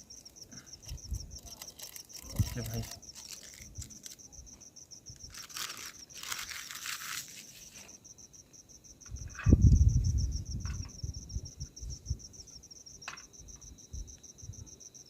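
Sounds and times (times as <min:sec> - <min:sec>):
crickets chirping: 0:00.0 - 0:15.0
crinkly rustling: 0:00.8 - 0:04.3, 0:05.2 - 0:08.0.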